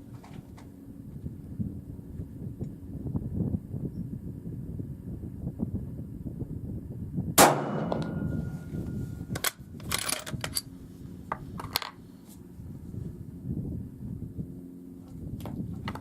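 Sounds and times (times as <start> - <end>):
rifle shot: 7.4 - 8.9.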